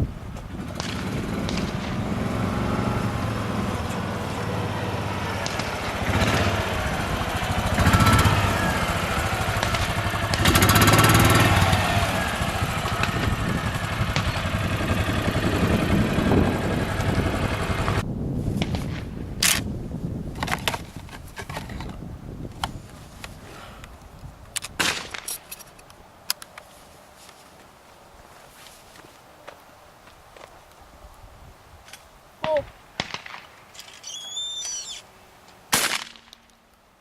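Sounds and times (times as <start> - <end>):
engine running: 0.4 - 18.0.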